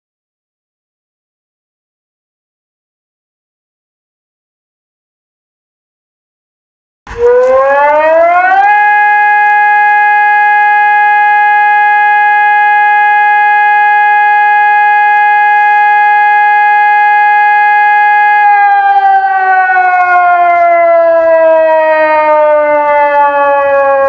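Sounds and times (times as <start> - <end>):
siren wailing: 7.1 - 24.0.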